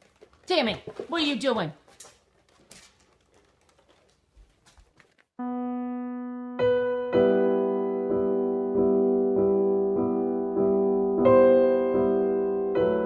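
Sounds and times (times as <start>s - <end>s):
faint clicks and rustles: 0.0s - 5.4s
electric piano chords: 5.4s - 13.0s.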